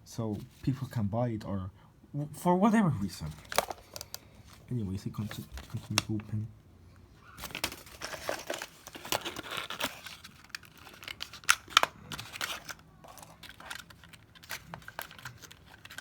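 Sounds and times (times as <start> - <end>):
packaging crinkling and tearing: 3.2 - 4.6, 7.3 - 16.0.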